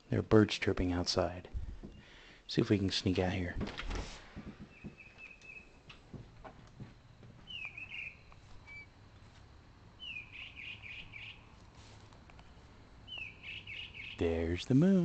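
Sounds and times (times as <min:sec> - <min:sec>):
faint knocks: 0:03.6 - 0:05.1
bird chirping and trilling: 0:04.7 - 0:05.8, 0:07.5 - 0:08.3, 0:10.0 - 0:11.4, 0:13.1 - 0:14.6.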